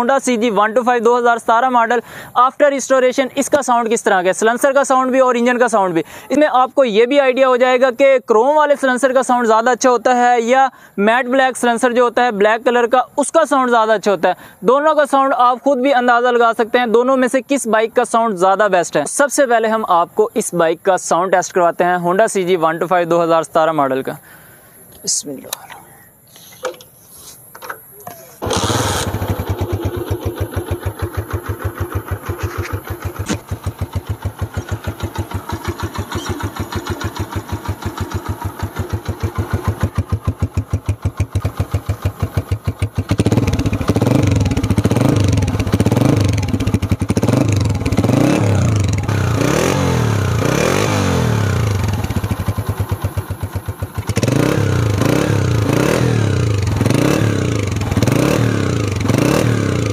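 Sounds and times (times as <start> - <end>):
motorcycle engine idling and revving: 28.4 - 59.9.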